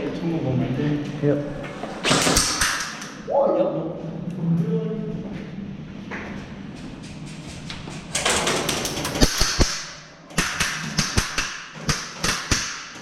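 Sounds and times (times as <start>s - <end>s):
airsoft guns firing: 2.0s - 3.2s, 9.1s - 13.0s.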